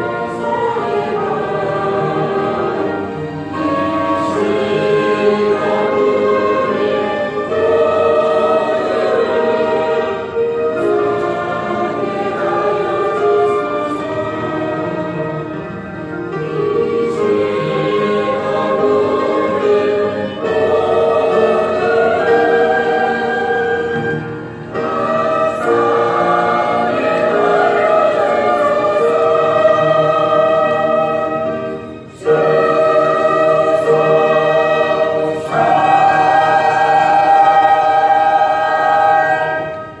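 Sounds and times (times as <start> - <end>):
church choir singing a hymn: 0.0 - 40.0.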